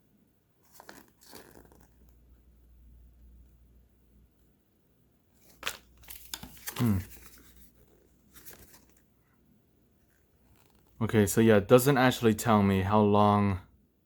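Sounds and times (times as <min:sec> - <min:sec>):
paper packaging crinkling: 0:00.6 - 0:01.9, 0:05.4 - 0:09.0.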